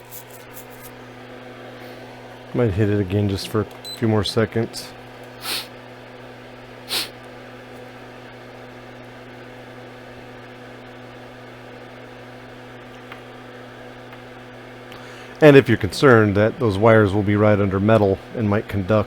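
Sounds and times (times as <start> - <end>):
steady electrical hum: 0.0 - 19.0
short hissing puffs: 5.4 - 5.8, 6.9 - 7.2.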